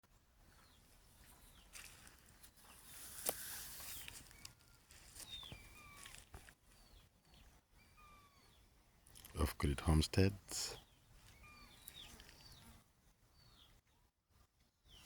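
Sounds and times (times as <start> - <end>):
faint bird chirps: 0.5 - 8.8, 10.7 - 14.1.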